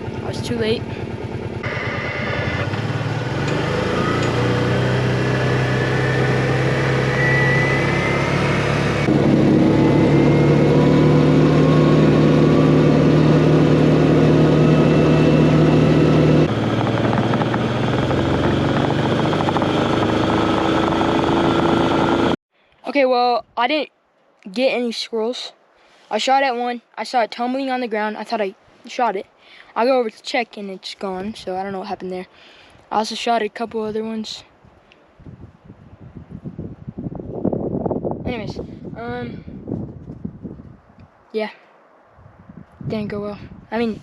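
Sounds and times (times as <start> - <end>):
utility vehicle engine running: 0.0 - 22.4.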